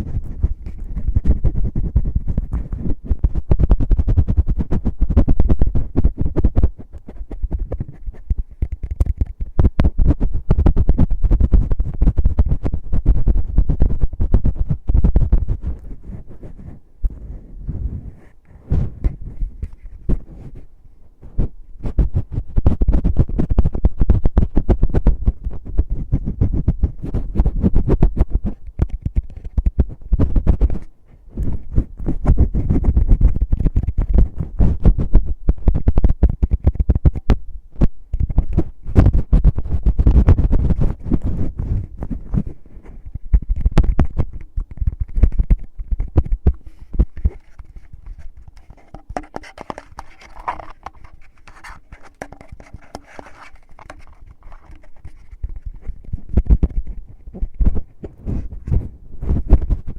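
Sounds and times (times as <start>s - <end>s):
fingers scratching microphone: 0.0s - 59.9s
muffled thumps: 29.5s - 59.9s.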